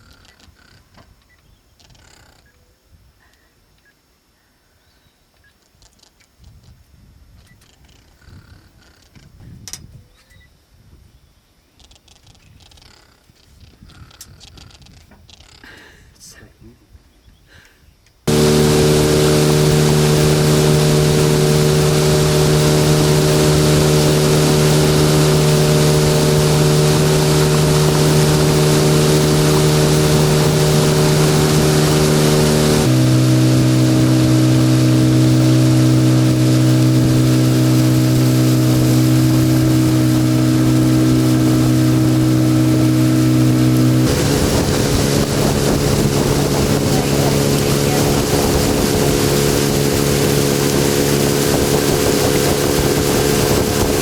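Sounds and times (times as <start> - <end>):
outboard motor running: 18.3 - 54.0.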